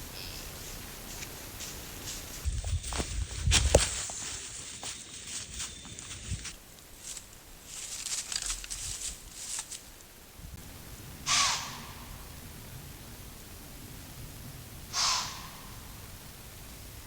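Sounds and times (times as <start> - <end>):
light rustling: 0.2 - 10.1
deer snorting: 11.2 - 12.1, 14.9 - 15.7.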